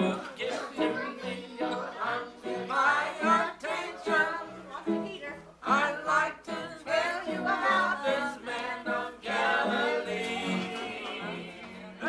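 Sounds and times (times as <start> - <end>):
guitar accompaniment: 0.0 - 2.7
gospel singing: 0.0 - 12.0.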